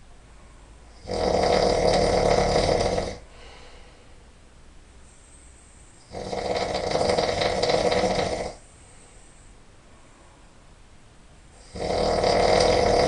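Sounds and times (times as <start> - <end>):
person snoring loudly: 1.0 - 3.3, 6.1 - 8.6, 11.6 - 13.0.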